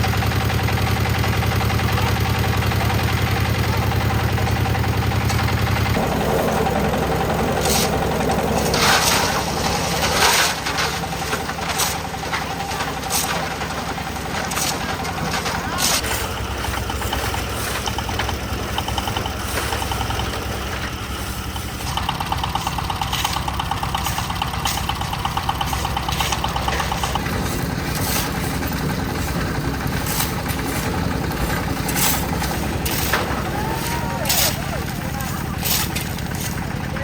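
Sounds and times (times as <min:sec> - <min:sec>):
concrete mixer engine running: 0:00.0 - 0:37.0
sharp metal clanks: 0:21.7 - 0:36.7.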